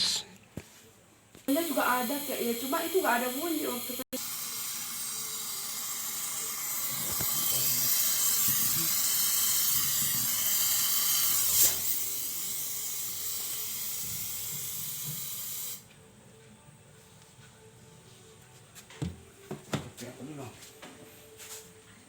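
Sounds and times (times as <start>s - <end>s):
gas torch flame hissing: 1.5s - 15.9s.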